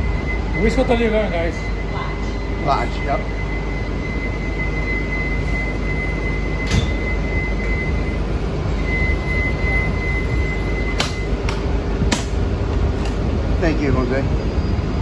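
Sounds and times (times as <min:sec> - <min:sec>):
bus engine idling: 0:00.0 - 0:15.0.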